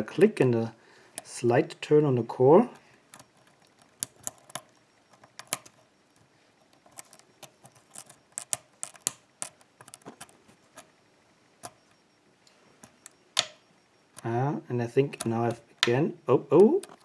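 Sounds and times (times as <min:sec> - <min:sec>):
lock pick metallic clicks: 0:02.8 - 0:05.8, 0:06.7 - 0:10.9, 0:12.8 - 0:13.6, 0:16.6 - 0:17.0.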